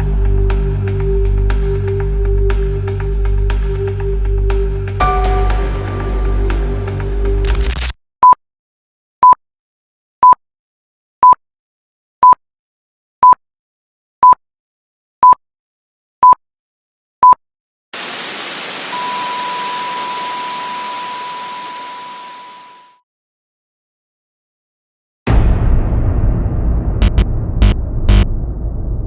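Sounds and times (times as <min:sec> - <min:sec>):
static hiss: 0:18.0 - 0:22.9
short electronic beeps: 0:18.9 - 0:23.0
steady beep tone: 0:18.9 - 0:23.0, 0:27.0 - 0:28.3.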